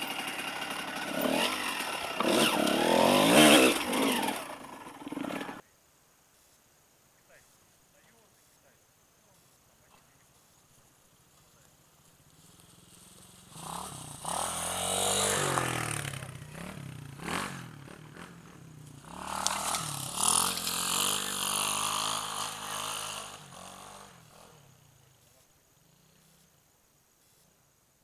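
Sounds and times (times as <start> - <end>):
motorcycle engine revving past: 0.0 - 5.6, 12.2 - 25.0.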